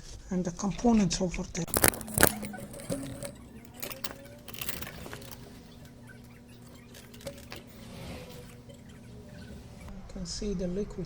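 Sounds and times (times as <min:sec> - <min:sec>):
small parts clicking and rustling: 0:01.6 - 0:09.9.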